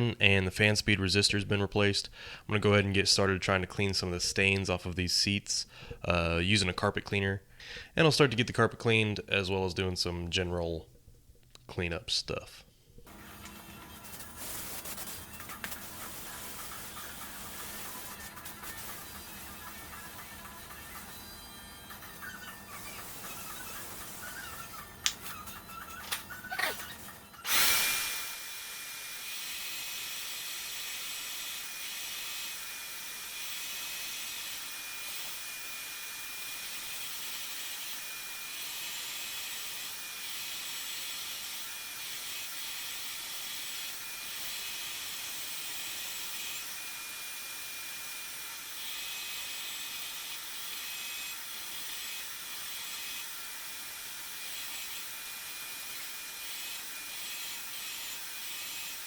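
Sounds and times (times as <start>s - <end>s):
suction hiss: 13.1s - 19.6s, 27.4s - 29.2s
carpet cleaner motor whine: 13.1s - 40.4s.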